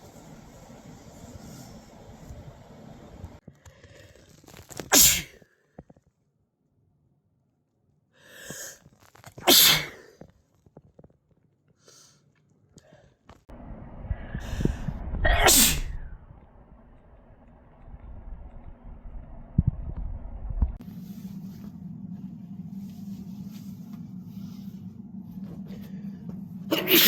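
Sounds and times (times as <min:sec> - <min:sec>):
low steady rumble: 0:00.0 - 0:03.4, 0:13.5 - 0:27.0
person sneezing: 0:04.9 - 0:05.4, 0:09.4 - 0:10.1, 0:15.3 - 0:15.9, 0:26.7 - 0:27.0
breathy inhale: 0:14.1 - 0:15.0.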